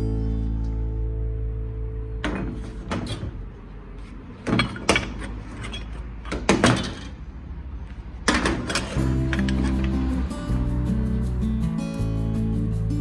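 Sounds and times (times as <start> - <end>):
guitar music: 0.0 - 4.0, 8.9 - 13.0
metal workpieces knocking: 4.0 - 7.2.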